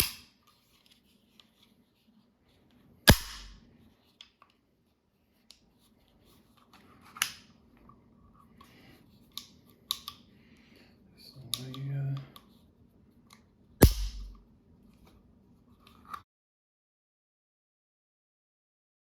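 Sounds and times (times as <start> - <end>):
pistol metallic clicks and snaps: 0.0 - 0.5, 3.1 - 3.6, 7.1 - 7.5, 9.3 - 10.3, 13.3 - 14.4
low thud: 13.8 - 14.4.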